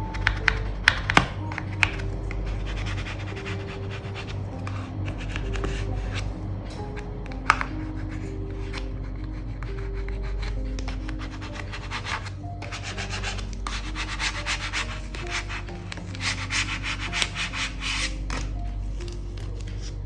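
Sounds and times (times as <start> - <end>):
background music: 0.0 - 20.0.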